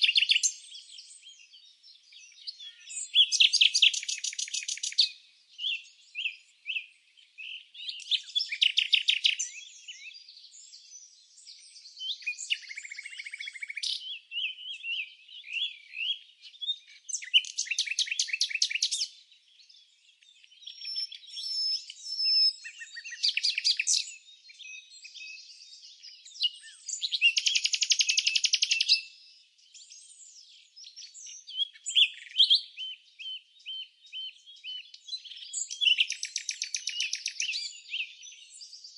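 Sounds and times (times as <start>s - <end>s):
songbirds chirping and trilling: 0.0s - 38.9s.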